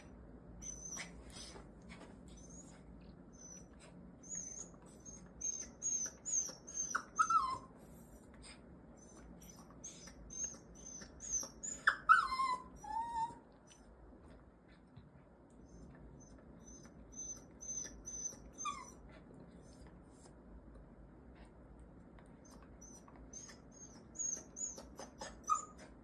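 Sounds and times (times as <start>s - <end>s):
dog whimpering with high squeaks: 0.6s - 1.6s, 2.3s - 8.2s, 9.0s - 13.4s, 15.7s - 19.1s, 22.4s - 26.0s
dog whining: 0.6s - 1.6s, 2.3s - 8.3s, 9.0s - 13.5s, 15.6s - 19.2s, 22.4s - 26.0s.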